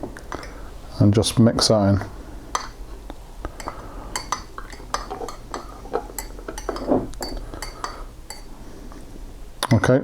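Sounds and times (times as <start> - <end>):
teaspoon clinking against cup: 3.6 - 8.5.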